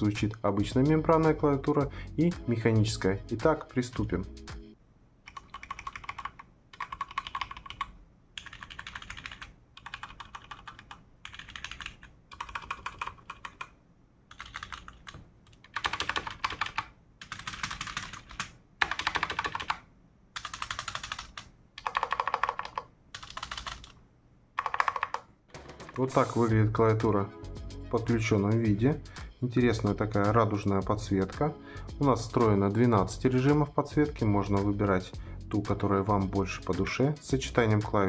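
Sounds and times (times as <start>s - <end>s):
mechanical keyboard typing: 5.3s - 19.8s, 20.4s - 24.0s, 24.6s - 25.3s
membrane keyboard typing: 5.3s - 24.0s, 24.6s - 26.1s.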